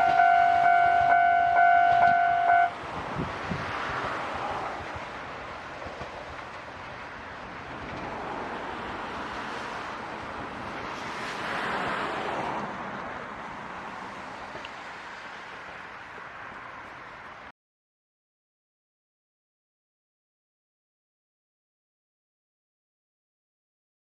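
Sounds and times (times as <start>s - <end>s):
steam train rumbling past: 0.0s - 12.8s
wind on microphone: 1.8s - 5.2s.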